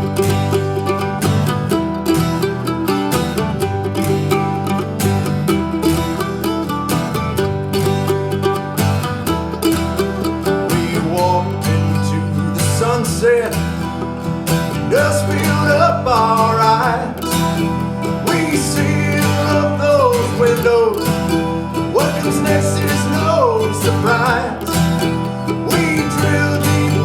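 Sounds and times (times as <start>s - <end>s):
country-folk band music: 0.0s - 27.0s
guitars playing: 0.0s - 27.0s
sliding melodic lead line: 0.0s - 27.0s.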